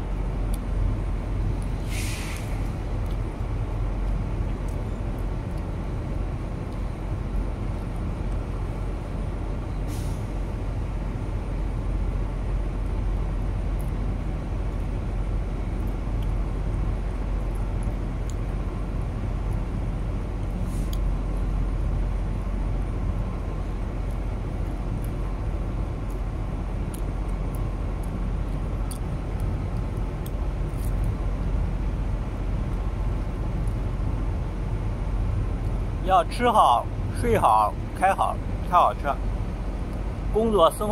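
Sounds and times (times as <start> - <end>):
faint hisses: 1.8 - 2.6.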